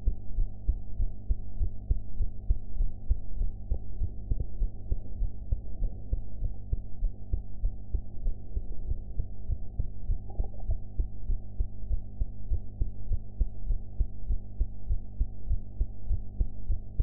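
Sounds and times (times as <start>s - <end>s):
faint steady hum: 0.0s - 17.0s
heartbeat thumps: 0.0s - 17.0s.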